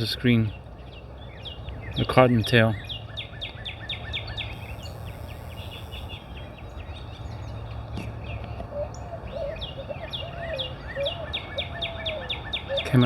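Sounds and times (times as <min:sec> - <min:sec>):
low warbling bird call: 0:02.8 - 0:07.5, 0:08.7 - 0:13.0
short high bird chirps: 0:03.3 - 0:06.5.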